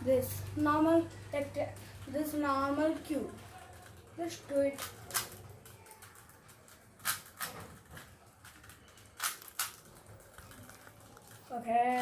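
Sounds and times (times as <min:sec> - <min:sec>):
faint plastic rattling: 0:01.1 - 0:12.0
puzzle cube clacking: 0:03.1 - 0:11.4.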